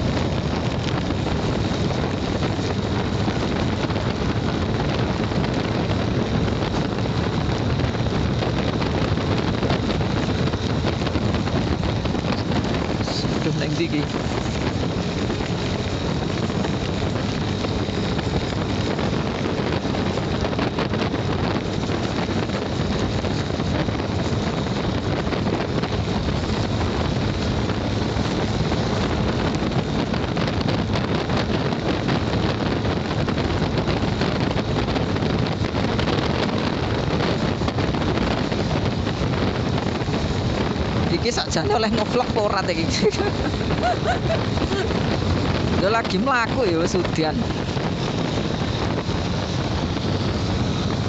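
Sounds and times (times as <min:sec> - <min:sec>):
wind rushing on microphone: 0:00.0 - 0:51.0
heavy rain: 0:29.4 - 0:51.0.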